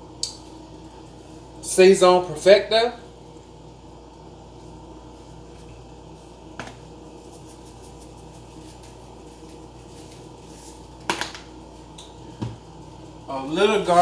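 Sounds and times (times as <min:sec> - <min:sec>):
background hum: 0:00.0 - 0:14.0
shaker containers handled: 0:06.6 - 0:11.5.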